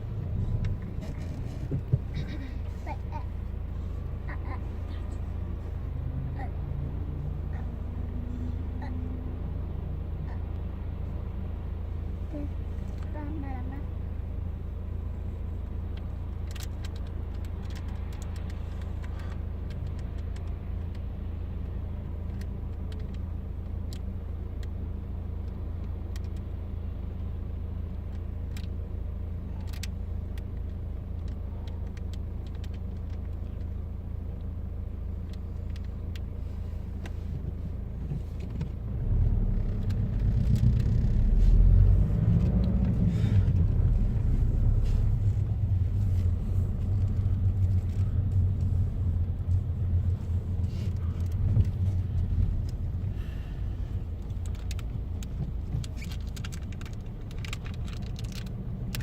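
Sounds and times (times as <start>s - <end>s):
steady low rumble: 0.0s - 59.0s
faint clicks: 15.9s - 21.1s.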